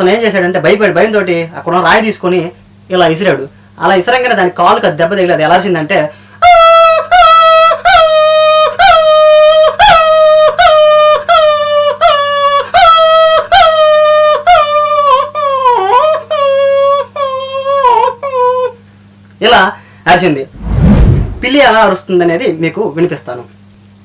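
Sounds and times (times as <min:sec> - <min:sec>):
man mimicking dog yelps: 0:06.4 - 0:18.8.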